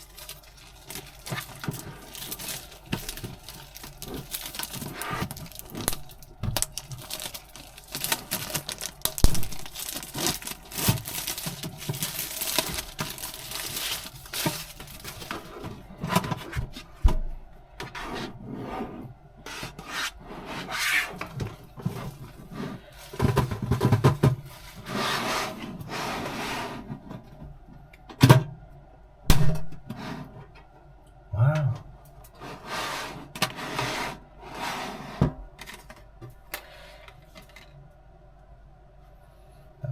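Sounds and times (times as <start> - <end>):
hands rustling packaging: 0.0 - 16.2, 21.1 - 25.6.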